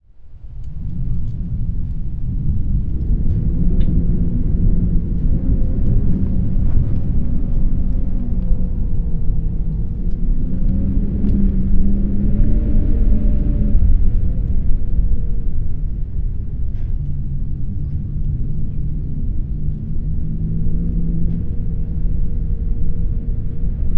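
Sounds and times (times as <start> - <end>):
heavy wind rumbling: 0.0 - 23.9.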